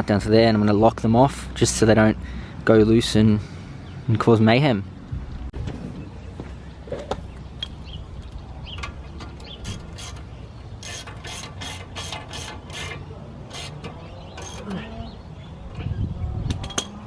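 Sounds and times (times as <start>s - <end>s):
spanner ratcheting on metal: 9.5s - 14.7s.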